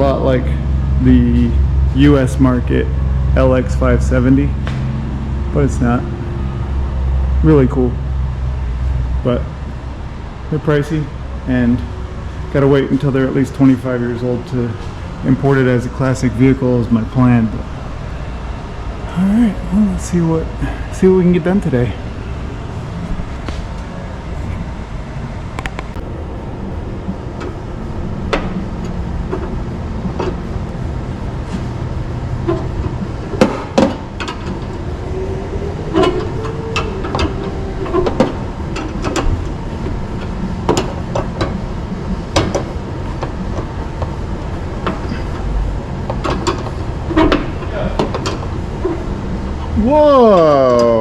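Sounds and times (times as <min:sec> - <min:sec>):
faint whine: 0:00.0 - 0:51.0
steady low hum: 0:00.0 - 0:51.0.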